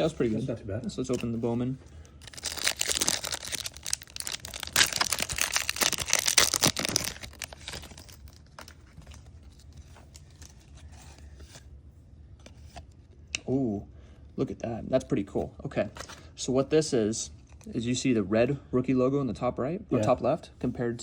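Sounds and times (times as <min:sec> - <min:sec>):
packaging tearing and crinkling: 0:02.2 - 0:09.2.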